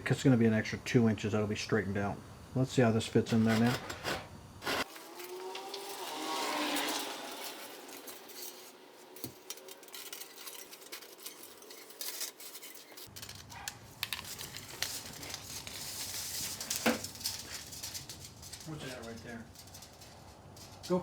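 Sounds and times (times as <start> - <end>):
metal wire clinking and scraping: 4.8 - 21.0.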